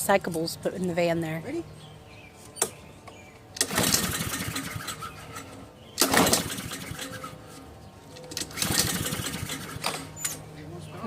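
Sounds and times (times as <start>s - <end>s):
lawn mower engine turning over: 2.5s - 10.5s.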